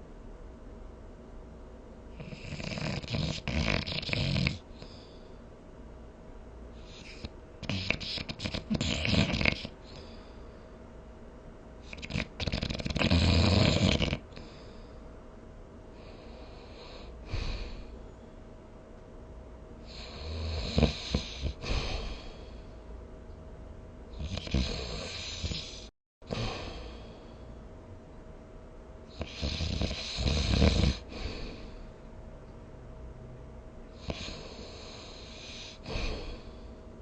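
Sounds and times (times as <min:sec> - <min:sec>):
loud rattling snores: 0:02.2 - 0:04.6, 0:06.9 - 0:09.8, 0:11.9 - 0:14.3, 0:19.9 - 0:22.2, 0:24.2 - 0:26.9, 0:29.2 - 0:31.4
soft breath: 0:04.7 - 0:05.6, 0:09.8 - 0:11.0, 0:14.3 - 0:15.3, 0:15.9 - 0:18.5, 0:20.9 - 0:22.9, 0:31.0 - 0:32.1, 0:33.9 - 0:37.0.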